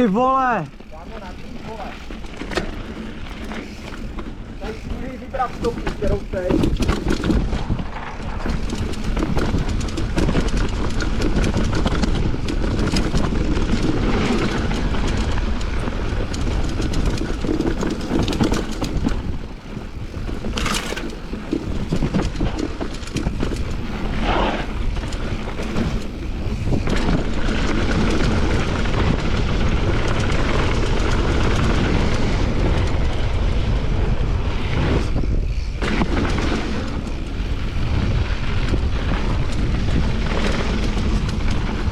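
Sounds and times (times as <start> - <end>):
bike tyre noise: 0.0 - 41.9
wind rush on microphone: 0.0 - 41.9
bike knocking over bumps: 1.1 - 29.3.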